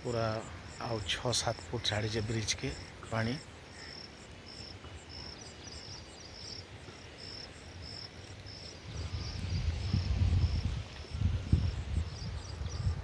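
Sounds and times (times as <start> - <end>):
cricket chirping: 0.0 - 13.0.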